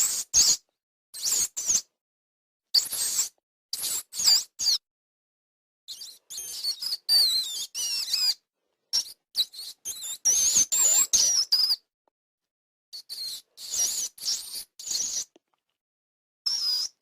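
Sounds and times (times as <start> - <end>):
rat squeaking: 0.0 - 0.6, 1.2 - 1.9, 2.8 - 4.8, 5.9 - 11.9, 13.0 - 15.4, 16.5 - 17.0.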